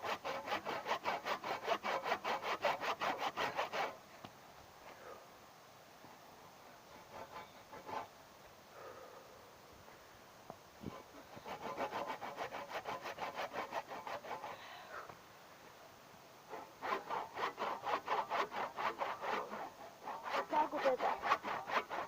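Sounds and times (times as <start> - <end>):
hand saw cutting log: 0.0 - 4.0, 6.9 - 8.1, 10.9 - 14.6, 16.5 - 22.0.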